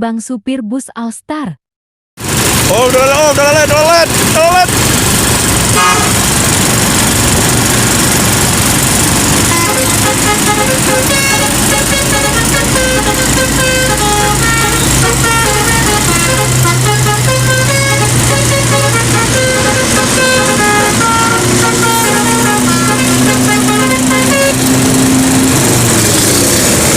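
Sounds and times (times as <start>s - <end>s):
steady low drone: 2.5s - 26.9s
musical air horn tune: 5.7s - 6.3s, 9.4s - 25.5s.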